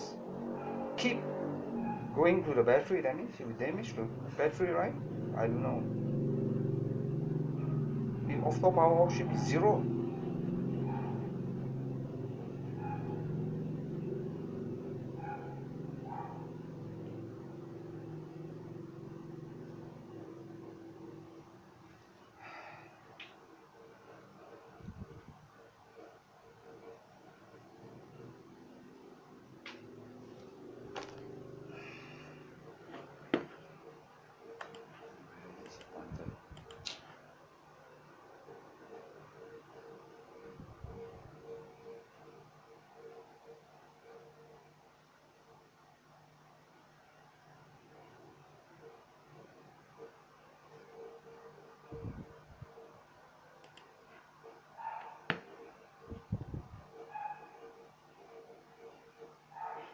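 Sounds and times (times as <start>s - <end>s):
faint steady hum: 0.0s - 59.9s.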